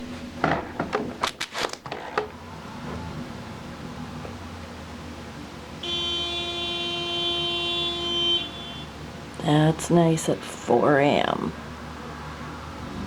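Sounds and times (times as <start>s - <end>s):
sharp clicks and knocks: 0.4s - 2.4s
low engine hum: 2.3s - 5.8s
car horn honk: 5.8s - 9.0s.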